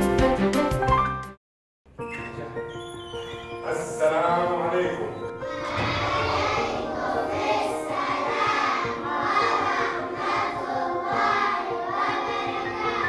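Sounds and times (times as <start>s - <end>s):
held accompanying notes: 2.1s - 13.0s
voices singing together: 5.3s - 13.0s.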